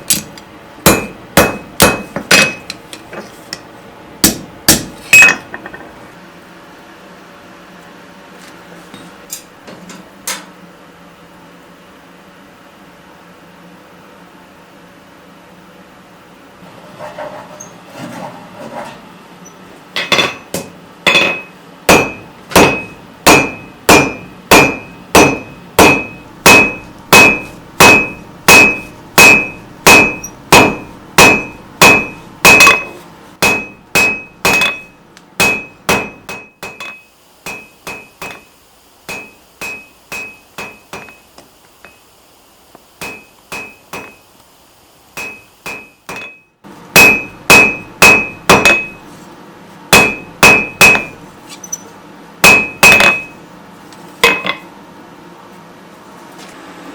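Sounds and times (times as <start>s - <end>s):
hammer on hot steel anvil: 0.0s - 2.8s, 4.2s - 5.8s, 20.0s - 38.5s, 39.1s - 41.2s, 43.0s - 44.2s, 45.2s - 49.1s, 49.9s - 51.2s, 52.4s - 53.4s, 54.2s - 54.6s.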